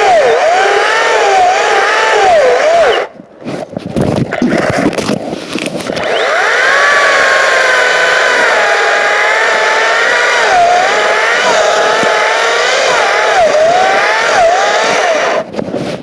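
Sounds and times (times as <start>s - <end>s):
electric chainsaw cutting wood: 0.0s - 3.1s, 5.8s - 15.5s
scraping and crackling: 3.4s - 6.2s.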